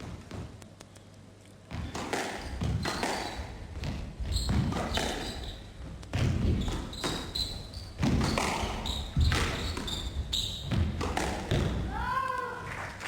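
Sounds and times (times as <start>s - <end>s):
court shoes squeaking: 1.7s - 11.9s
squash ball hitting racquets and walls: 1.7s - 12.0s.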